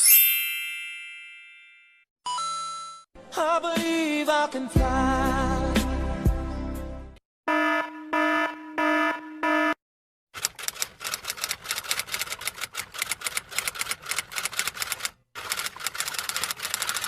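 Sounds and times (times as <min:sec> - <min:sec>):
rapid keyboard typing: 0:10.4 - 0:17.0.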